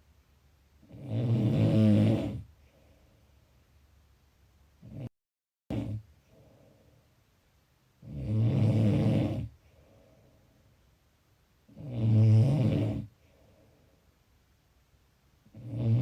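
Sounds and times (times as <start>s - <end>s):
low snores: 0.8s - 2.5s, 4.8s - 5.1s, 5.7s - 6.7s, 8.0s - 9.6s, 11.7s - 13.2s, 15.5s - 16.0s.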